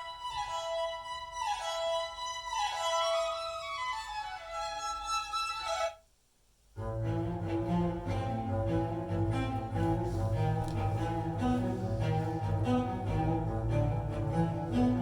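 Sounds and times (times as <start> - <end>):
low bowed strings: 6.8 - 15.0.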